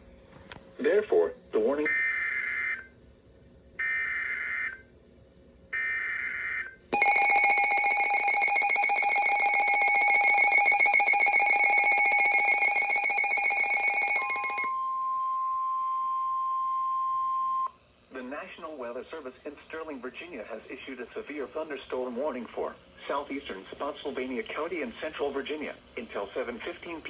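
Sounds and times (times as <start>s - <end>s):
steady warning tone: 7.0s - 14.9s
harsh two-tone attention signal: 7.0s - 16.5s.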